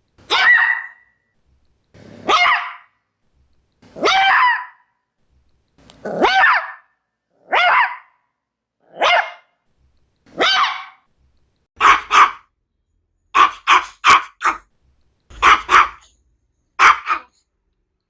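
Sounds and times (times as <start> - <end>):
dog barking: 0.3 - 1.2, 2.2 - 3.0, 4.0 - 4.9, 6.1 - 8.2, 8.9 - 9.6, 10.4 - 11.0, 11.8 - 12.5, 13.4 - 14.7, 15.3 - 16.1, 16.8 - 17.4.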